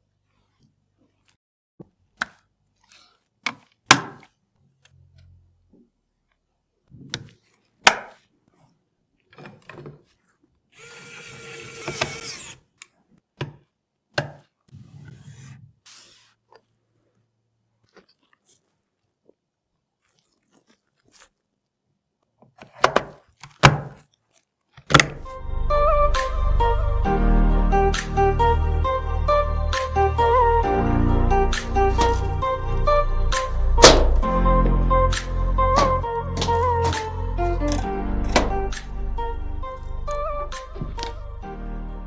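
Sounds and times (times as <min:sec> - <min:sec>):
computer parts clicking and knocking: 0:24.8 - 0:25.3, 0:32.0 - 0:32.4, 0:33.8 - 0:34.3, 0:35.8 - 0:38.8.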